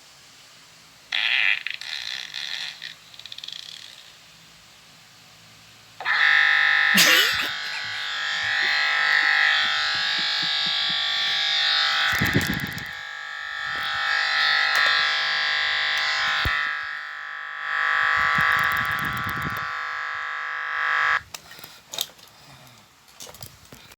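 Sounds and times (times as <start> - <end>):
harsh electronic buzz: 6.0 - 21.2.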